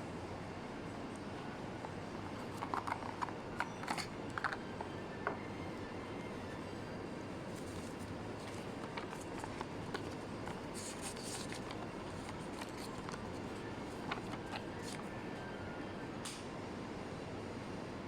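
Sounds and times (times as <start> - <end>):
packaging clicks and rustles: 1.8 - 5.1, 7.5 - 15.4.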